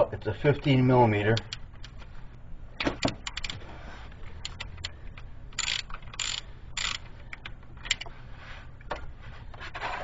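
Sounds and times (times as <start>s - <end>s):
ratchet wrench clicking: 3.2s - 3.6s, 4.4s - 4.9s, 5.6s - 7.1s.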